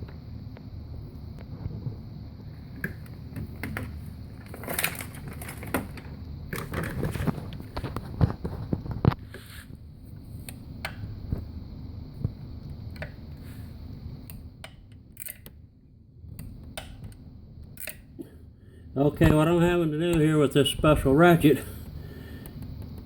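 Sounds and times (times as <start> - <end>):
ratchet wrench clicking: 15.2 - 15.5, 17.8 - 18.0.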